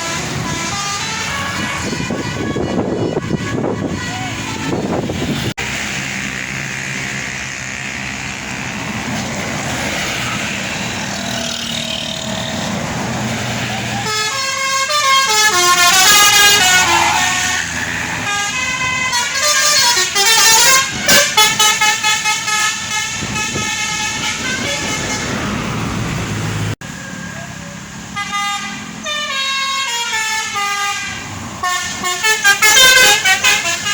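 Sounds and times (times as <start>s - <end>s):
multi-tone bus horn melody: 0.0s - 8.8s, 13.6s - 25.9s, 28.1s - 33.9s
bus engine running: 0.0s - 33.9s.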